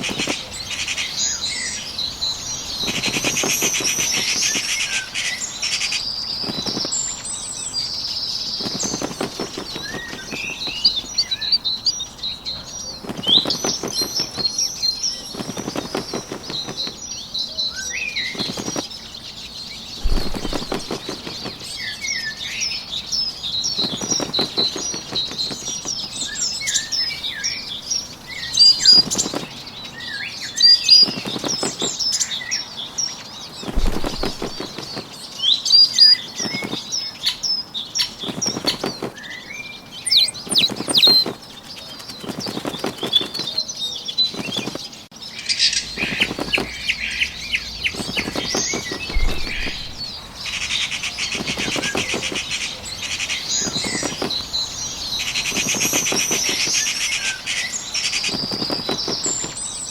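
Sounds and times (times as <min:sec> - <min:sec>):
bird wings flapping: 0:00.0 - 0:32.5, 0:33.2 - 0:45.1, 0:45.8 - 0:59.9
songbirds chirping: 0:00.0 - 0:59.9.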